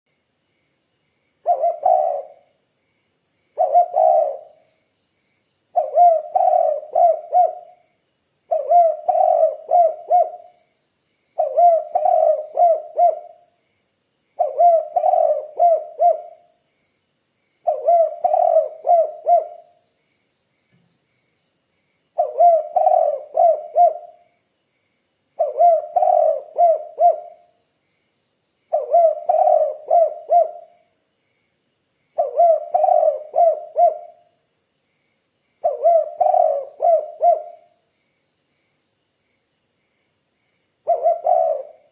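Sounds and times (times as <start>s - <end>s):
dove cooing: 1.4s - 2.5s, 3.6s - 4.6s, 5.7s - 7.8s, 8.5s - 10.5s, 11.4s - 13.5s, 14.4s - 16.5s, 17.6s - 19.8s, 22.2s - 24.2s, 25.4s - 27.5s, 28.7s - 30.8s, 32.2s - 34.3s, 35.6s - 37.7s, 40.8s - 41.9s.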